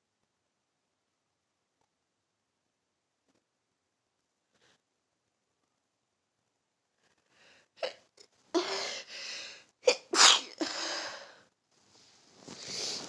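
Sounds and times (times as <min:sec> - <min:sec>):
sharp catching breath: 0:08.6 - 0:09.7
person sneezing: 0:09.9 - 0:11.2.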